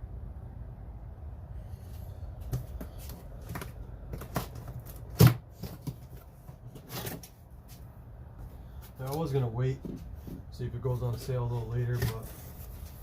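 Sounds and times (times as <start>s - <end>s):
cardboard packaging handled: 2.5s - 7.5s, 11.0s - 13.0s.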